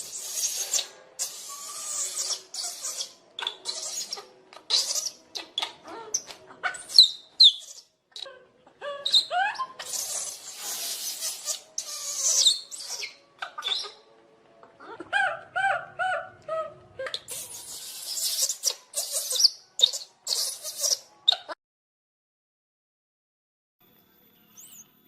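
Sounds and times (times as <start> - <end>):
short arched monkey squeals: 0.0 - 8.3, 8.9 - 14.0, 17.1 - 21.5
monkey screeching: 0.0 - 14.0, 15.2 - 21.5.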